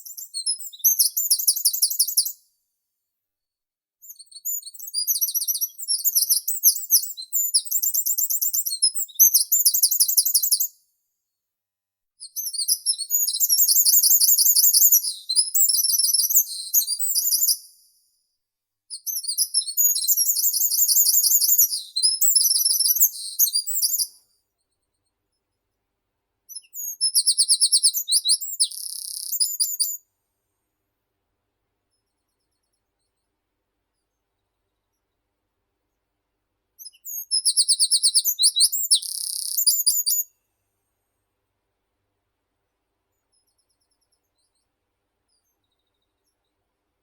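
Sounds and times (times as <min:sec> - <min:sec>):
songbird singing: 0:12.4 - 0:17.6, 0:19.0 - 0:24.1, 0:26.5 - 0:30.0, 0:36.8 - 0:40.3.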